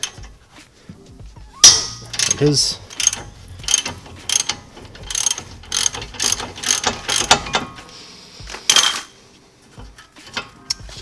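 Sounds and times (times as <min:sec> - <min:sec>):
ratchet wrench clicking: 0:00.0 - 0:00.3, 0:01.6 - 0:07.8, 0:08.5 - 0:09.1.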